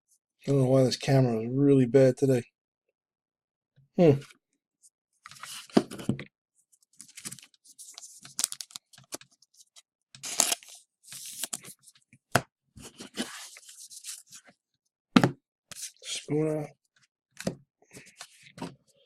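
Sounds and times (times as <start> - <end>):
wrapper tearing and rustling: 10.2 - 11.6.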